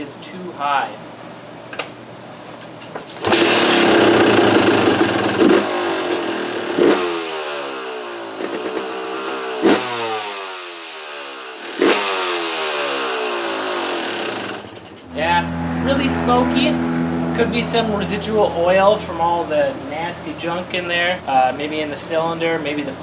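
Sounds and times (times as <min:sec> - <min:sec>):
two-stroke engine revving: 0:03.2 - 0:19.6.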